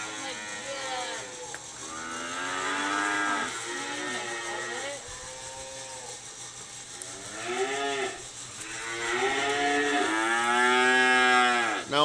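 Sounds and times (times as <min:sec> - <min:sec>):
cows mooing: 0:00.0 - 0:06.3, 0:07.0 - 0:12.0.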